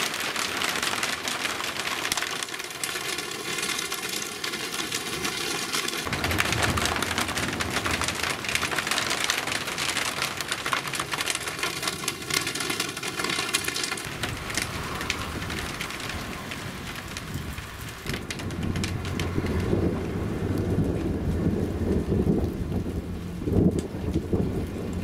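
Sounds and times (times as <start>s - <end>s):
raindrops and hail pattering: 0.0s - 25.0s
thunder rumbling: 5.9s - 12.4s, 13.2s - 25.0s.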